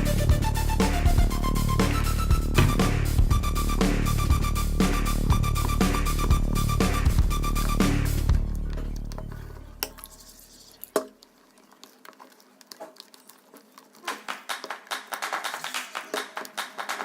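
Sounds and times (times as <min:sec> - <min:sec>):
electronic background music: 0:00.0 - 0:09.8.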